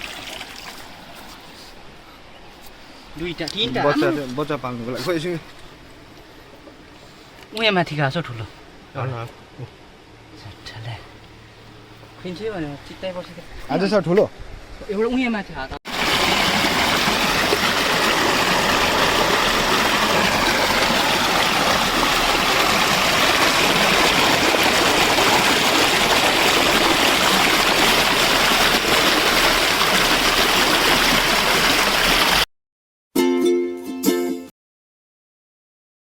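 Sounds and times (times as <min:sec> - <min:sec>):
stream water rushing: 0:00.0 - 0:06.1, 0:15.9 - 0:32.5
plucked string music: 0:33.2 - 0:34.5.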